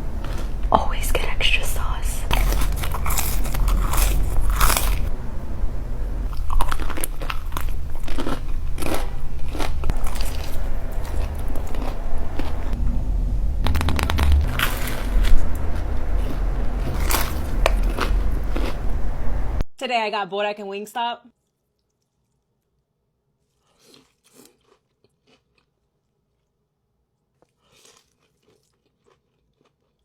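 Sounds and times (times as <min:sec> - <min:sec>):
low hum: 0:00.0 - 0:19.7
crunching and chewing fried chicken: 0:02.3 - 0:05.1, 0:06.3 - 0:12.8, 0:16.2 - 0:18.8, 0:21.4 - 0:30.0.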